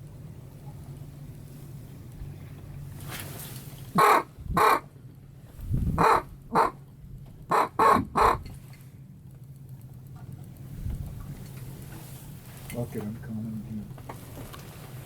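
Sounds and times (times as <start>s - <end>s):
duck call quacks: 4.0s - 4.8s, 6.0s - 6.7s, 7.5s - 8.4s.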